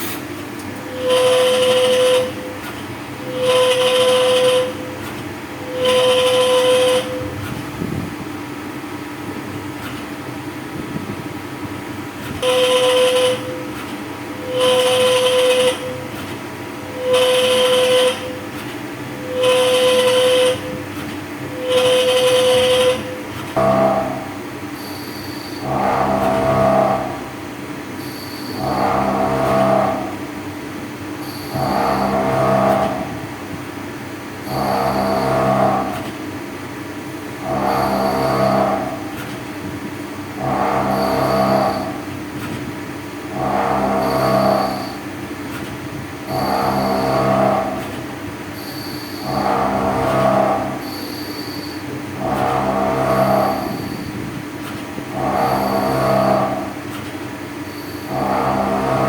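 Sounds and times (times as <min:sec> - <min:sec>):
machine running hum: 0:00.0 - 0:59.0
machine whistling hisses: 0:24.8 - 0:25.7, 0:28.0 - 0:28.8, 0:40.9 - 0:42.0, 0:44.0 - 0:45.0, 0:48.6 - 0:49.4, 0:50.8 - 0:51.8, 0:53.2 - 0:54.1, 0:55.5 - 0:56.3, 0:57.6 - 0:58.2.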